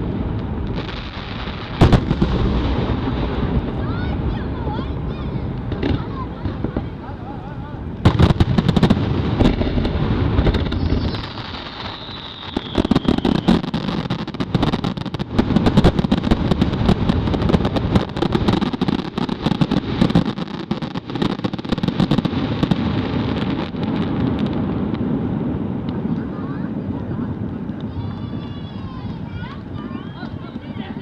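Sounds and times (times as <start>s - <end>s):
fireworks bangs and crackling: 0.0s - 31.0s
firework whistle falling in pitch: 10.7s - 13.7s.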